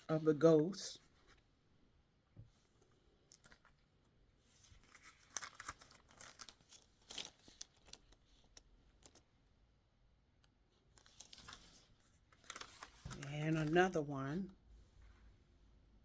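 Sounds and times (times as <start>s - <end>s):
plastic packaging crinkling: 4.8s - 9.2s, 11.0s - 13.8s.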